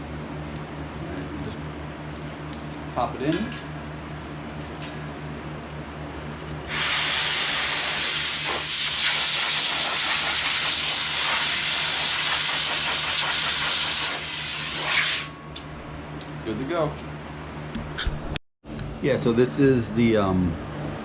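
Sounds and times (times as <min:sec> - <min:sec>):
steady low hum: 0:00.0 - 0:21.0
compressed air hissing: 0:06.7 - 0:15.4.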